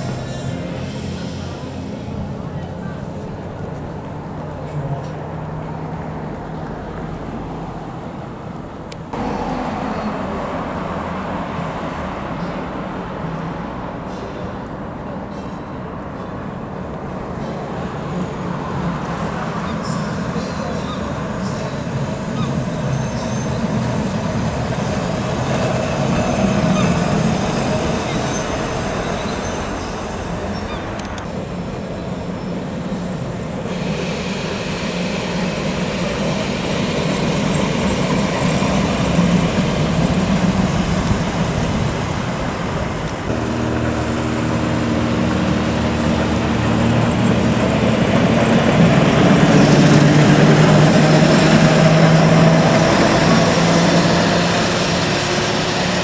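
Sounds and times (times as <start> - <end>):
tram rumble and rail noise: 0.0 - 56.0
multi-tone hum: 12.3 - 56.0.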